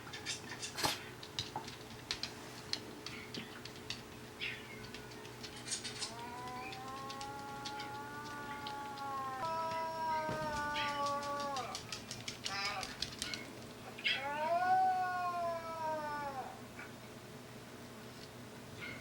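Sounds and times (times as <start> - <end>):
light clicking and patter: 0.0 - 13.8
small dog howling: 6.1 - 11.9, 14.0 - 16.6.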